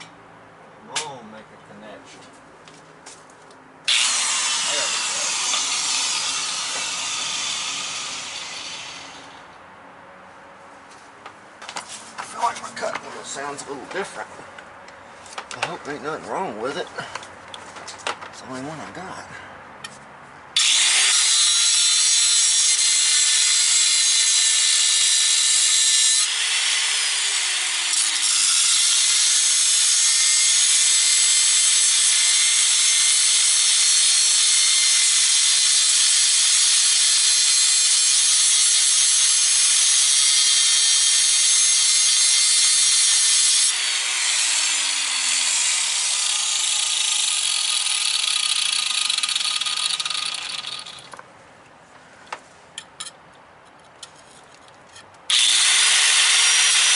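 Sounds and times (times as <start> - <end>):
electric grinder cutting: 3.9 - 9.5, 20.6 - 51.2, 55.3 - 56.9.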